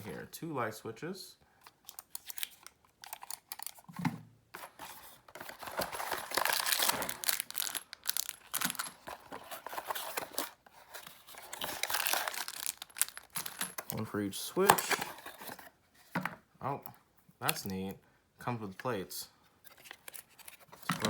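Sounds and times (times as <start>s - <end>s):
packaging crinkling and tearing: 1.9s - 3.9s, 4.7s - 14.0s.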